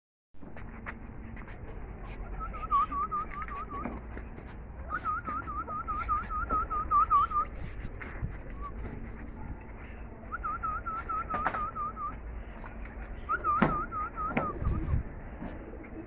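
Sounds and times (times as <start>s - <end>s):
high whistled call: 2.3s - 3.9s, 4.9s - 7.6s, 10.3s - 12.2s, 13.2s - 15.0s.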